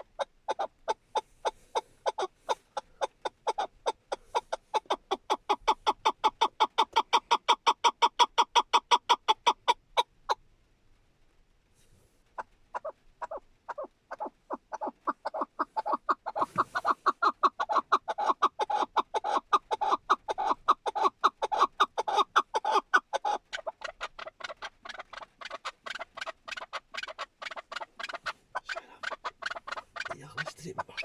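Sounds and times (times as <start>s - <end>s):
partridge calling chuk notes: 12.8s - 31.0s.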